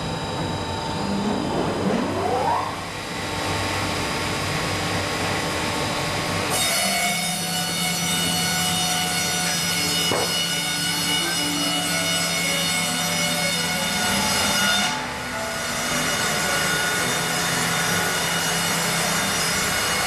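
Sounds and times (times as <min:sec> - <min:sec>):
band saw cutting wood: 0:06.5 - 0:20.0.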